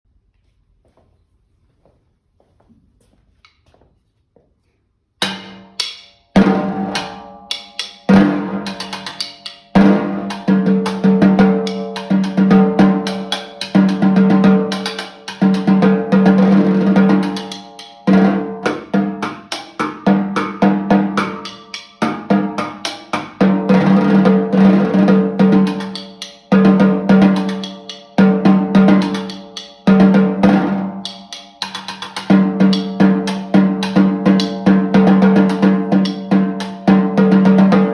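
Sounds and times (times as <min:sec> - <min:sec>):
snare drum strokes and rolls: 0:09.8 - 0:31.0, 0:31.6 - 0:37.9.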